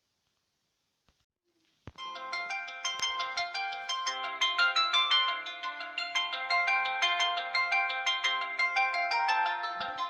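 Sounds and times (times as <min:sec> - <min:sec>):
phone ringtone melody: 0:02.0 - 0:10.0.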